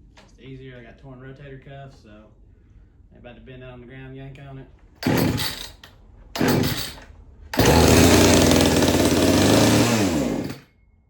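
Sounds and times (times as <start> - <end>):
chainsaw running loudly: 5.0 - 7.0, 7.6 - 10.6
chainsaw starter cord yanks: 5.0 - 10.6.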